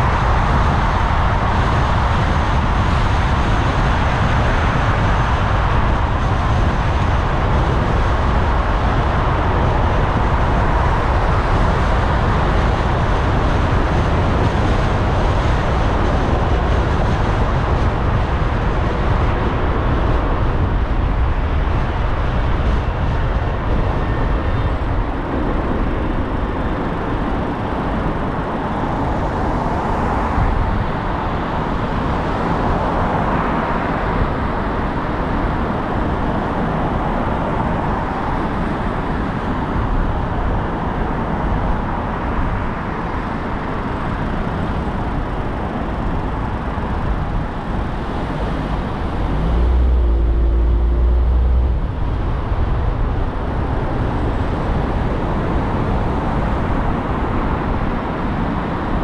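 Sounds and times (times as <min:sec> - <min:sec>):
hiss of surrounding traffic: 0:00.0 - 0:59.0
tyre and engine rumble: 0:43.7 - 0:57.5.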